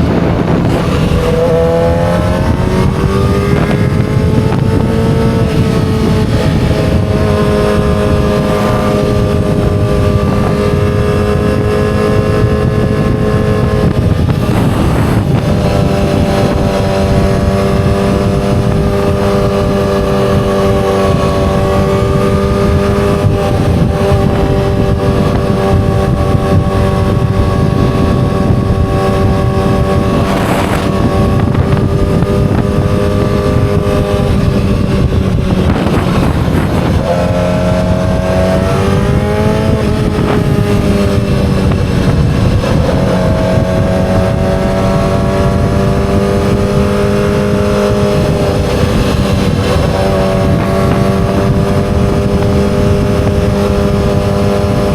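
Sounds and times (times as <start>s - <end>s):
motorcycle engine running loudly: 0.0s - 54.9s.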